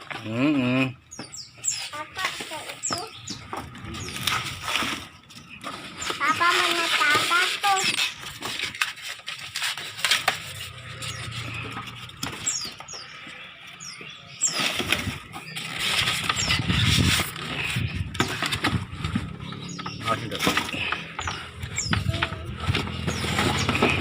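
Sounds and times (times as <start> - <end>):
packing material rustling: 3.7 - 13.2, 14.5 - 19.5.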